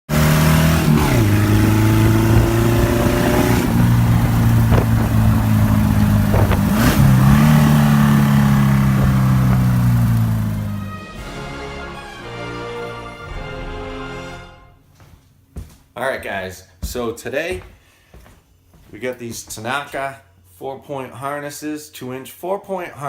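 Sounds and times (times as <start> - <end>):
vehicle engine revving: 0.1 - 11.2
travel noise: 0.1 - 11.9.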